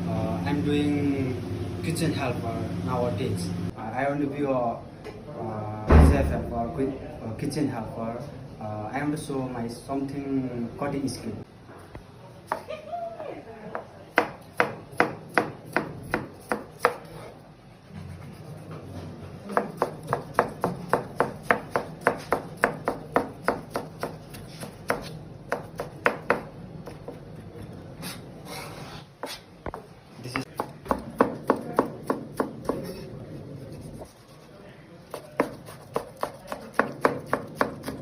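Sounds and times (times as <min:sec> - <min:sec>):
knife chopping on cutting board: 0:14.2 - 0:17.3, 0:19.5 - 0:27.2, 0:35.1 - 0:38.0.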